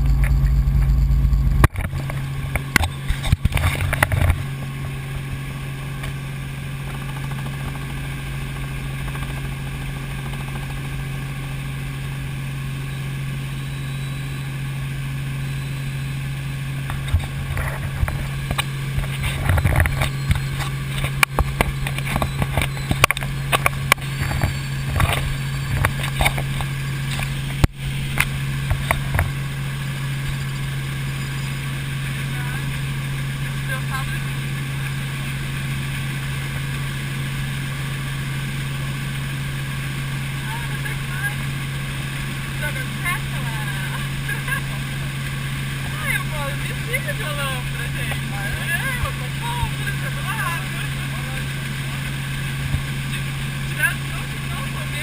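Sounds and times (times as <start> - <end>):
helicopter engine and rotor hum: 0.0 - 55.0
short crackles and knocks: 1.6 - 5.0, 16.8 - 29.4.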